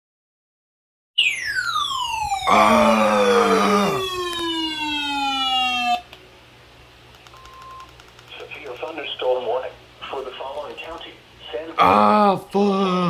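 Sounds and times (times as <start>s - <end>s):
siren-like tone sliding down: 1.2s - 6.0s
dense buzzing: 1.9s - 6.0s.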